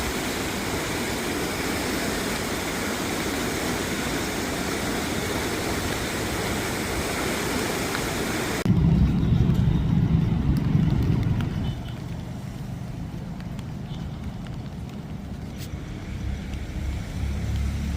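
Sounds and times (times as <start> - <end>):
floodwater roaring: 0.0 - 17.9
low rumble: 8.6 - 17.9.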